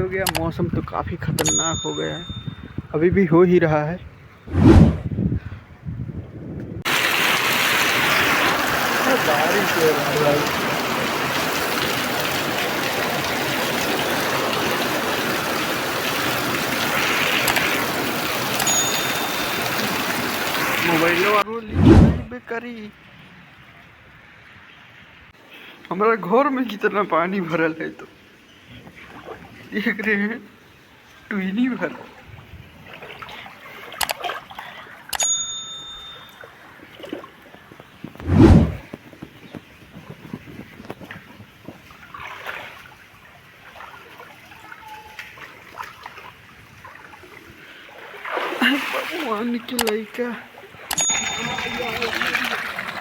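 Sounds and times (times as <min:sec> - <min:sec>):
sharp clicks: 0:00.2 - 0:00.5
metallic bell-like ring: 0:01.4 - 0:02.8, 0:18.6 - 0:20.0, 0:35.2 - 0:36.5, 0:50.9 - 0:52.1
water trickling and splashing: 0:06.8 - 0:22.3, 0:26.7 - 0:53.0
rain falling: 0:06.9 - 0:21.5
river flowing: 0:06.9 - 0:22.3, 0:38.2 - 0:38.8, 0:47.7 - 0:53.0.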